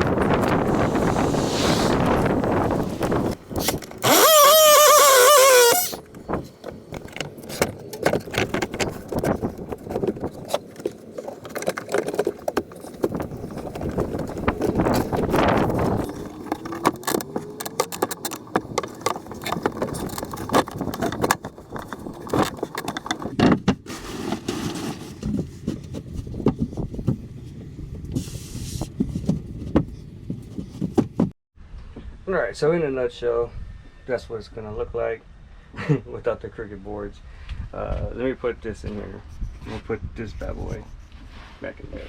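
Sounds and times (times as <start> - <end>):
short rising squeak: 3.6 - 6.0.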